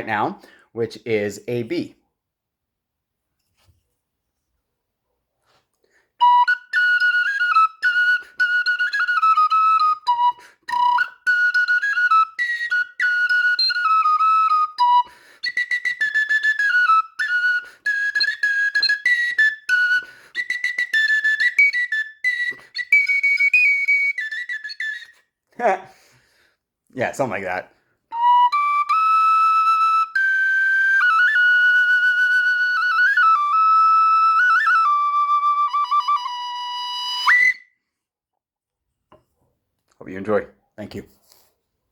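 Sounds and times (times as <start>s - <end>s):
wooden bird flute melody: 6.2s - 25.3s, 28.1s - 37.8s.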